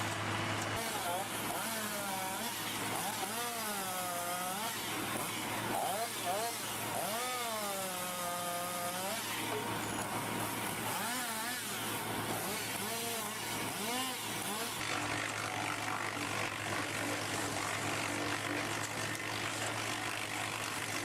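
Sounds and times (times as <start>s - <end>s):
diesel engine hum: 0.0s - 3.1s.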